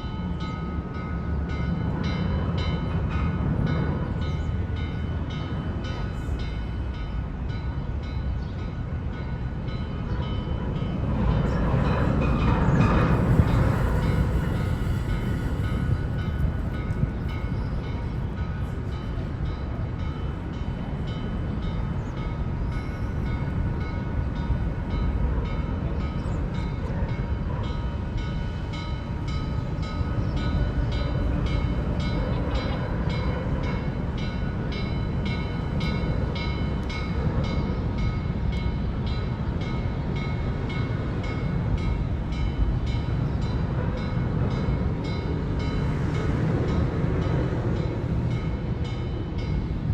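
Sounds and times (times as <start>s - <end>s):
steam train rumbling on track: 0.0s - 49.9s.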